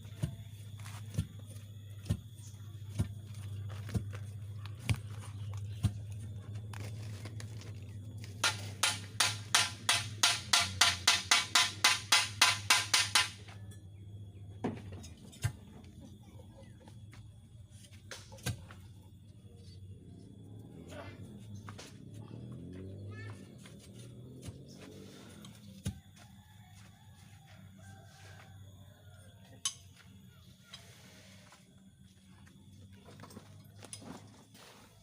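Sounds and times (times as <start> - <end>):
sharp knocks: 8.4 - 13.4.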